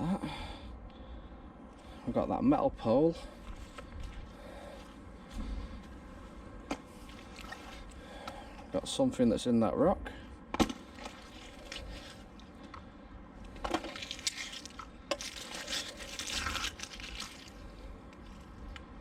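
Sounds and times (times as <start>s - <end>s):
handling rustling and scraping: 5.8s - 8.7s, 10.6s - 12.8s, 13.4s - 18.8s
faint water trickle: 7.0s - 8.4s.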